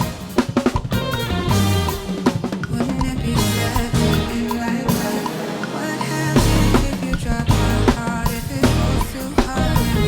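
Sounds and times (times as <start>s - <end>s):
drum kit: 0.0s - 10.0s
live band playing: 0.0s - 10.0s
bass line: 0.9s - 2.3s, 3.0s - 5.2s, 6.3s - 10.0s.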